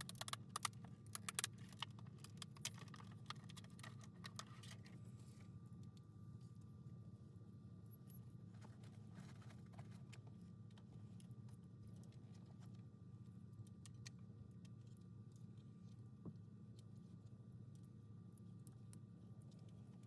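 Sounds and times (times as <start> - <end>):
faint irregular clicks: 0.0 - 4.6
steady low hum: 0.0 - 20.0.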